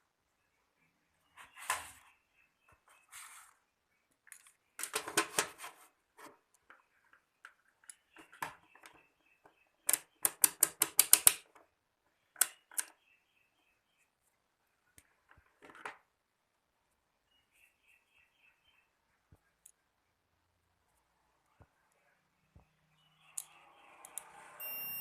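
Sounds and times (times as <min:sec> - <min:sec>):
faint short high beeps: 0:24.6 - 0:25.0.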